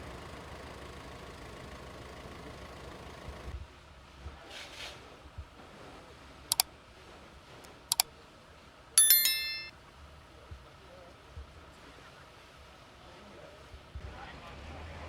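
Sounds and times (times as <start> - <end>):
bright metallic ring: 9.0 - 9.7.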